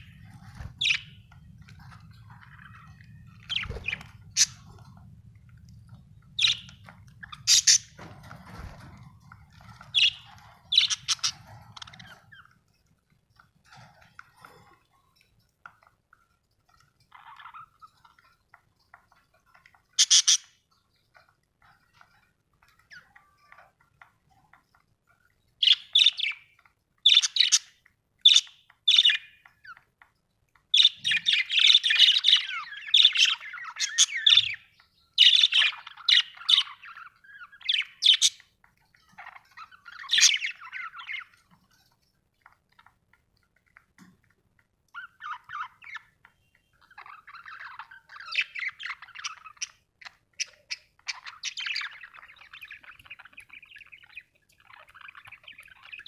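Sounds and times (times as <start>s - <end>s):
budgerigars chirping: 0.0s - 5.0s, 6.4s - 12.6s, 19.5s - 20.6s, 25.6s - 29.8s, 30.7s - 38.5s, 39.1s - 41.4s, 44.9s - 46.1s, 46.8s - 56.0s.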